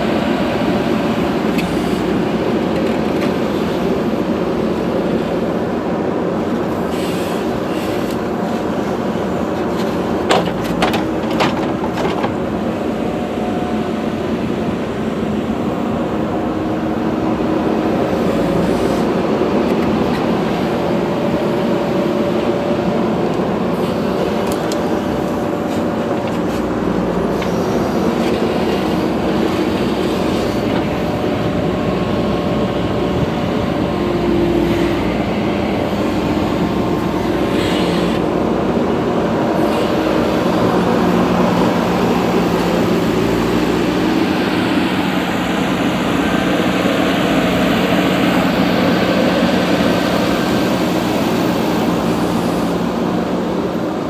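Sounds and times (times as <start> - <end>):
diesel engines running: 0.0 - 54.0
soil being dug and loaded: 6.4 - 13.1, 17.6 - 38.5.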